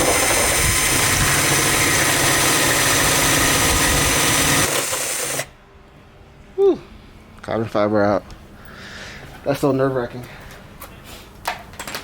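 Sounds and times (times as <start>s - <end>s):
power drill boring under load: 0.0s - 5.5s.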